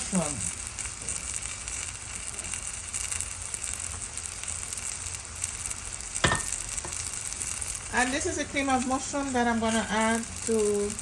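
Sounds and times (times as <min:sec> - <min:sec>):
food sizzling in a skillet: 0:00.0 - 0:11.0
sharp clink: 0:06.2 - 0:06.6.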